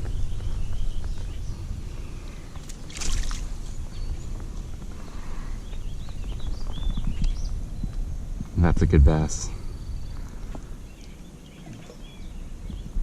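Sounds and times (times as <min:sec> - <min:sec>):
wind rumbling on microphone: 0:00.0 - 0:13.0
water splash: 0:02.6 - 0:03.5.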